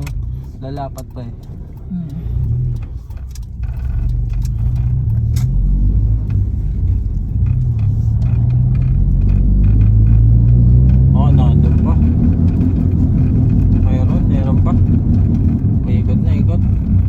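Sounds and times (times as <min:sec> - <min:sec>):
car cabin low rumble: 0:00.0 - 0:17.0.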